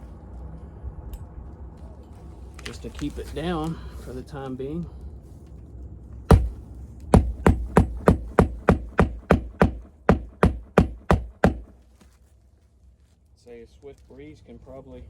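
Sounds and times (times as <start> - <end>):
hammer striking roofing nail: 6.3 - 6.6, 7.2 - 11.7.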